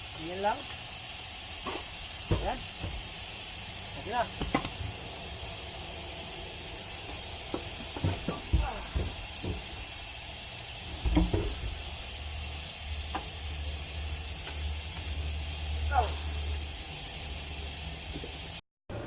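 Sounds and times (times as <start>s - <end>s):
steady hiss: 0.0s - 18.6s
metal clunks and knocks: 7.6s - 9.9s, 11.0s - 11.8s.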